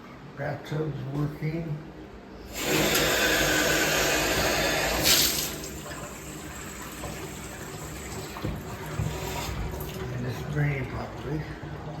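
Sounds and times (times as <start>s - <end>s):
faucet running into bathtub: 2.6s - 11.4s.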